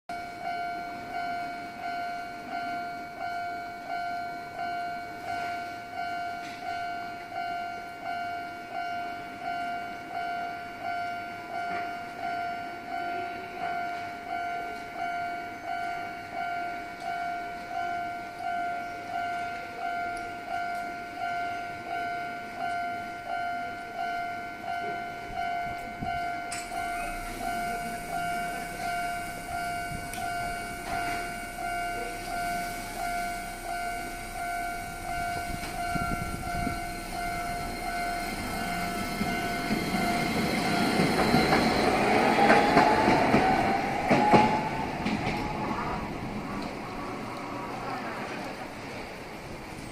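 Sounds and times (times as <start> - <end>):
level-crossing warning bell ringing: 0.1 - 49.9
approaching tram hiss: 26.6 - 49.9.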